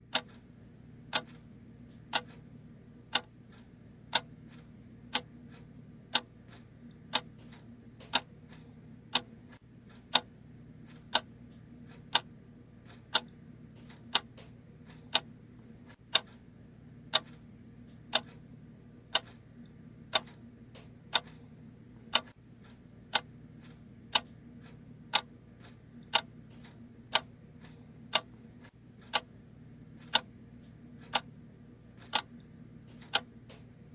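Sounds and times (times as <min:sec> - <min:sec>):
clock ticking: 0:00.0 - 0:33.9.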